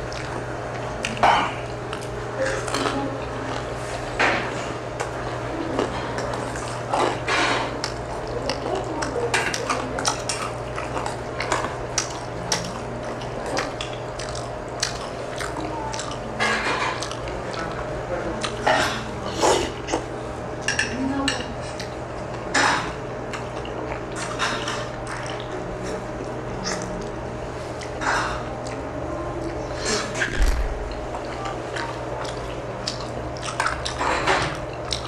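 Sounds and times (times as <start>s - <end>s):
low hum: 28.6s - 33.2s.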